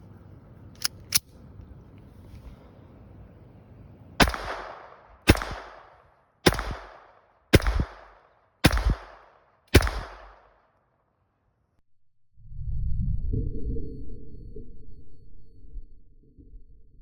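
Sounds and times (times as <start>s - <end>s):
pistol shots: 4.2s - 10.7s.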